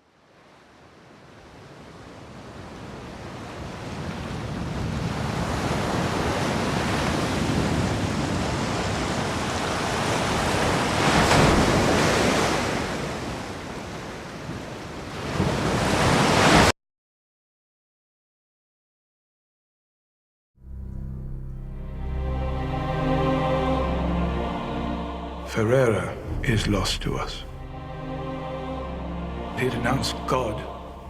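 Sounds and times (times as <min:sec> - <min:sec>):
wind: 0:00.0 - 0:16.7.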